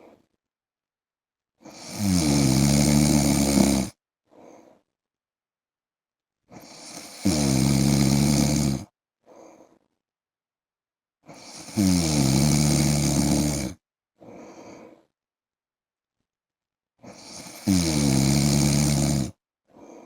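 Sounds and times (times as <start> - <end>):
man snoring loudly: 1.6 - 4.0, 6.6 - 8.9, 11.3 - 13.8, 17.1 - 19.4
faint breath out: 4.3 - 4.9, 9.2 - 9.9, 14.2 - 15.2.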